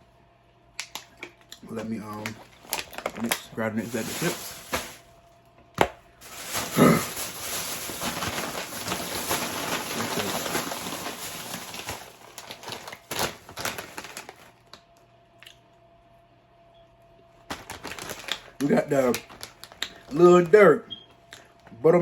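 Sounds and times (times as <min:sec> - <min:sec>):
chip bag crinkling and rustling: 0:01.6 - 0:05.1, 0:06.2 - 0:14.9, 0:17.5 - 0:20.6.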